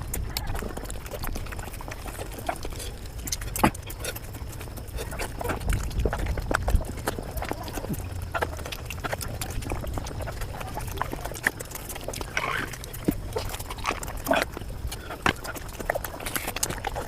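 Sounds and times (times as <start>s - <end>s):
steady low rumble: 0.0s - 16.4s
sped-up chewing and mouth smacks: 0.0s - 17.0s.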